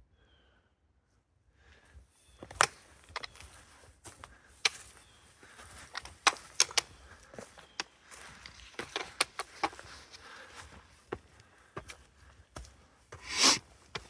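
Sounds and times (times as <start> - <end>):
boots striking rock: 13.2 - 14.0.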